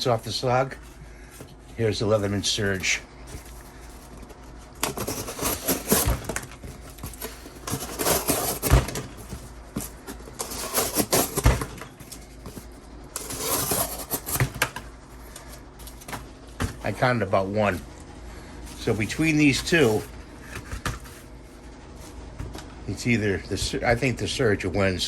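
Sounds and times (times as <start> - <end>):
knife slicing cardboard: 4.9 - 6.4, 7.2 - 9.0, 10.4 - 11.7, 13.2 - 14.6.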